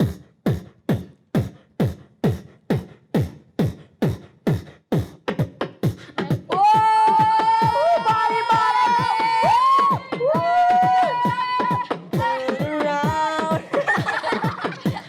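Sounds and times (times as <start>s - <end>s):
beatboxed kick drum thumps: 0.0s - 15.0s.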